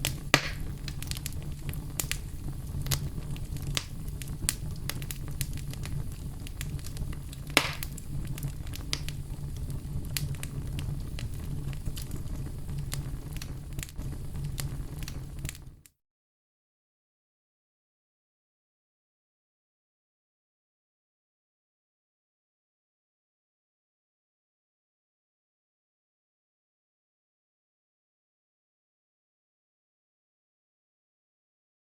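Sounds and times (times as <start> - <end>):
fire crackling and popping: 0.0 - 15.9.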